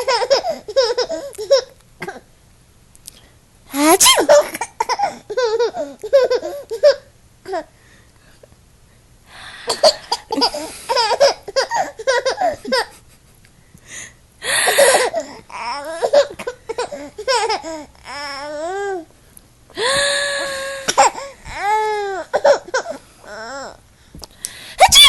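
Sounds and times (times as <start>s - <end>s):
baby laughing: 0.0s - 1.8s, 4.1s - 7.1s, 9.8s - 13.0s, 16.0s - 17.8s
person mock sneezing: 3.7s - 4.8s
squealing voice: 3.8s - 4.5s.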